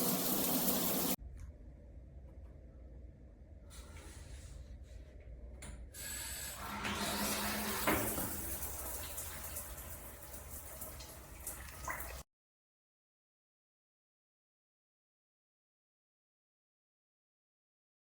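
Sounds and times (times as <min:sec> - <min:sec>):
shower water spraying: 0:00.0 - 0:01.2, 0:06.0 - 0:12.2.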